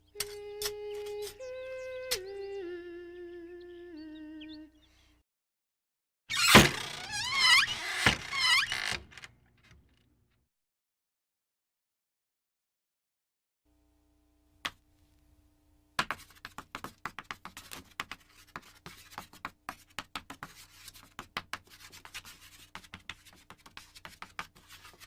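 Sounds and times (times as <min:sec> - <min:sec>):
faint steady hum: 0:00.0 - 0:05.2, 0:13.7 - 0:16.0.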